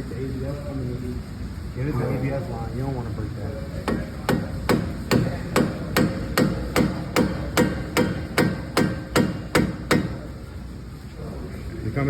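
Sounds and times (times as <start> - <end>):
hammer striking steel: 3.8 - 10.3.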